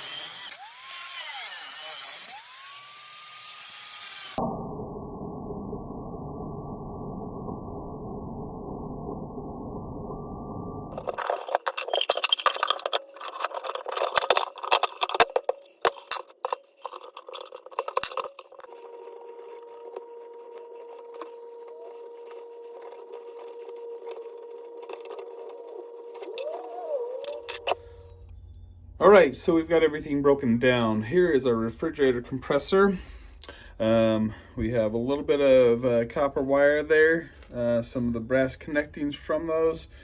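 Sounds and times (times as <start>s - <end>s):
faint steady hum: 4.5s - 31.0s
metal parts clinking and knocking: 10.9s - 18.9s, 21.1s - 27.9s.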